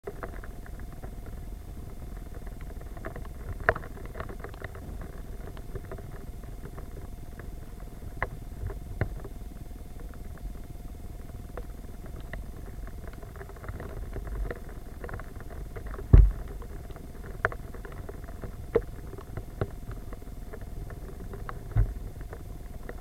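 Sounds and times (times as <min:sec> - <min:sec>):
steady low rumble: 0:00.1 - 0:23.0
raindrops tapping: 0:12.0 - 0:19.7.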